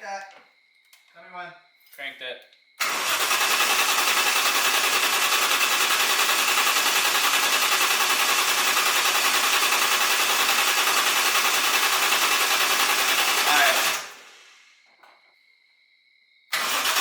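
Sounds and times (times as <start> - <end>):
starter motor cranking engine: 2.8 - 14.7, 16.5 - 17.0.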